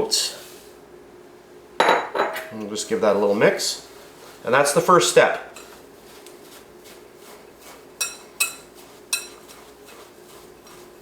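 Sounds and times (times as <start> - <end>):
spoon stirring dry ingredients: 3.0 - 11.0
spoon clinking against bowl: 8.0 - 9.4.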